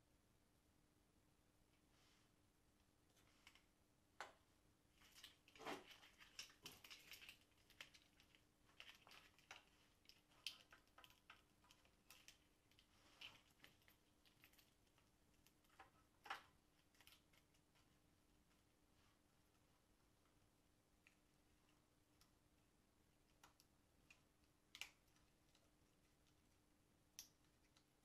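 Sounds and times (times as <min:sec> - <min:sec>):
small parts clicking and tapping: 0:05.0 - 0:17.9.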